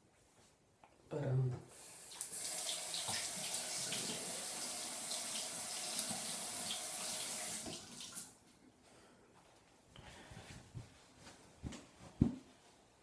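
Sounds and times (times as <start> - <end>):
sink tap running: 2.0 - 8.2.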